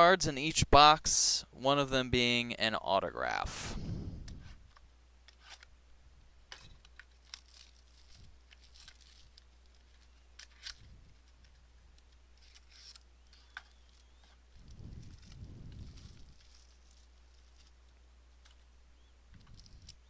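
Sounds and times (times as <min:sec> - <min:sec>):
plastic wrap snipped and torn: 0:06.6 - 0:17.8.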